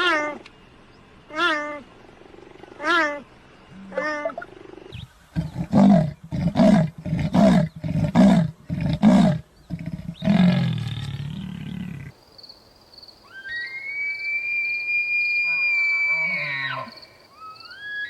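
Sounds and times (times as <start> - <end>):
large animal roaring: 3.8 - 12.2
high whistle-like tone: 13.3 - 16.4.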